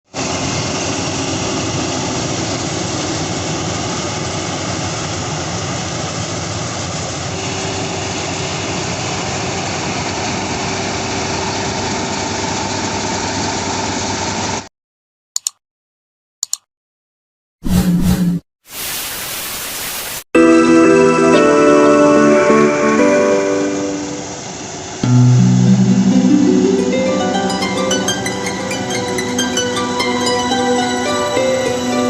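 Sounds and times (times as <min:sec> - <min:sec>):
combine harvester engine running: 0:00.2 - 0:14.6, 0:23.4 - 0:32.0
short click: 0:16.4 - 0:16.7.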